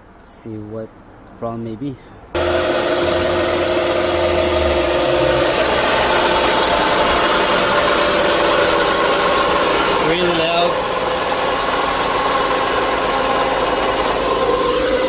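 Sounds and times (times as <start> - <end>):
car engine idling: 2.4 - 15.0
loud steady whine: 2.4 - 15.0.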